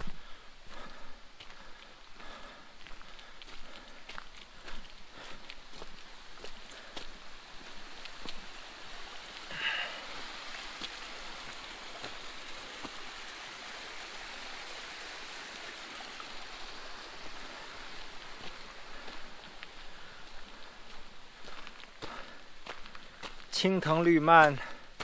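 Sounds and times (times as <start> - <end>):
rushing water: 0.0 - 25.0.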